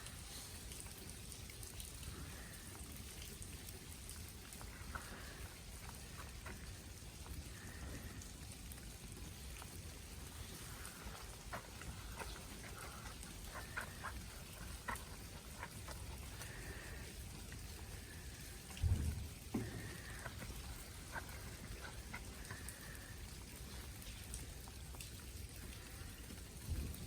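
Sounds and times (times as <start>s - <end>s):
meltwater dripping and pattering: 0.0s - 27.0s.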